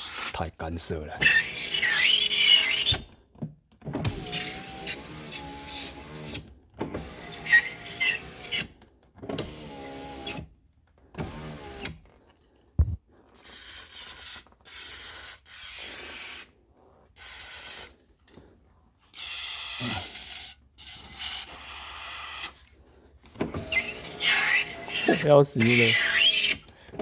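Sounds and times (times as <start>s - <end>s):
glass squeaking against rubber seals: 1.2s - 3.0s, 4.2s - 6.4s, 7.1s - 8.7s, 13.4s - 16.5s, 19.0s - 22.6s, 23.4s - 26.7s
power window motor running: 9.3s - 10.5s, 11.2s - 12.0s.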